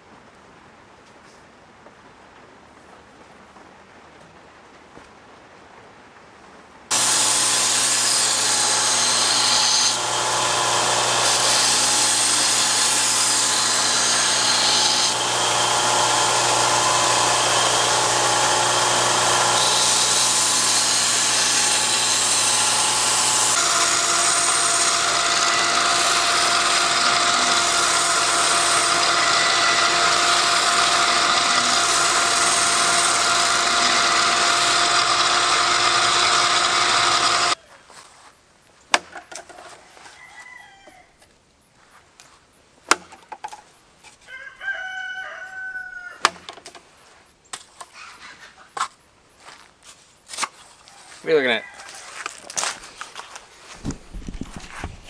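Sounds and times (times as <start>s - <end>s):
electric power tool running: 6.9s - 37.6s.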